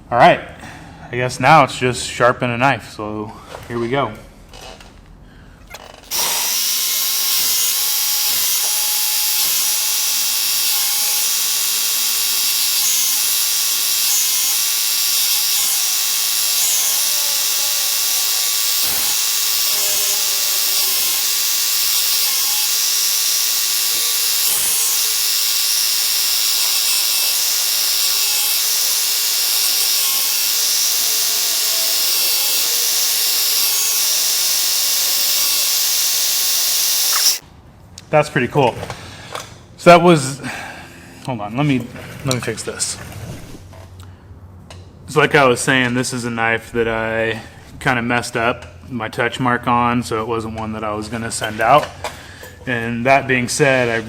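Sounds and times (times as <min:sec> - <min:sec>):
belt sharpener grinding knife: 0:05.6 - 0:37.4.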